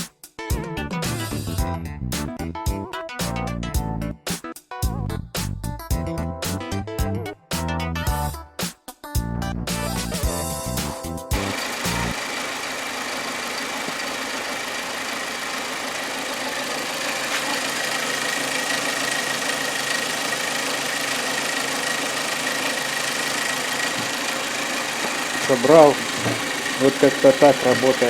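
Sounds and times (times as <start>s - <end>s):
car engine idling with whine: 11.4s - 28.0s.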